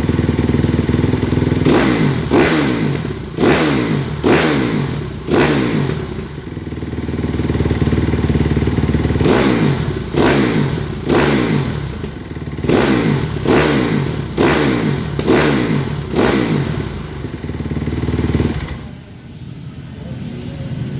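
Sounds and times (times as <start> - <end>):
motocross engine throttle blips: 0.0 - 19.2.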